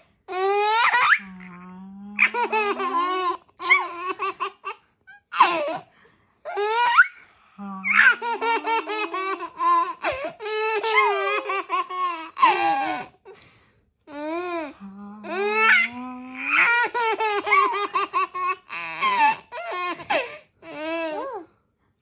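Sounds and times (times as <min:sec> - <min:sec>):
baby laughing: 0:00.3 - 0:01.3, 0:02.2 - 0:05.8, 0:06.5 - 0:07.2, 0:07.9 - 0:13.1, 0:15.3 - 0:20.3.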